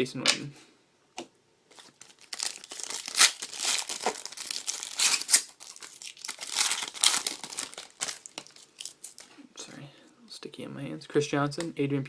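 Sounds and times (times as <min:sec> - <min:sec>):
foil wrapper crinkling and tearing: 0:01.7 - 0:09.3.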